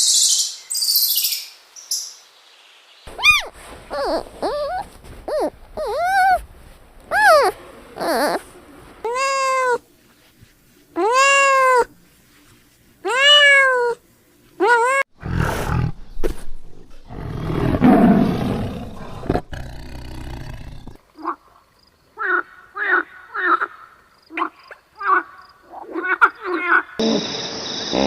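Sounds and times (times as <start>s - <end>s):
cat meowing: 3.1s - 6.4s, 7.1s - 8.4s, 9.1s - 9.8s, 11.0s - 11.9s, 13.1s - 14.0s
short quick animal calls: 3.1s - 6.4s
big cat roaring: 15.2s - 21.0s.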